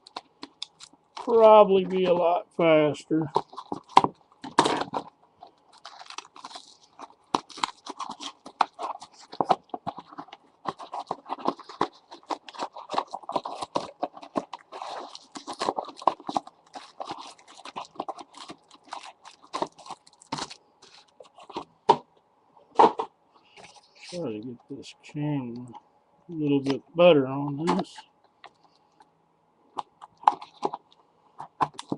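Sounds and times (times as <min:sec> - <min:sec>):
plastic wrappers crinkling: 0:00.0 - 0:02.3, 0:03.2 - 0:21.8, 0:29.8 - 0:31.9.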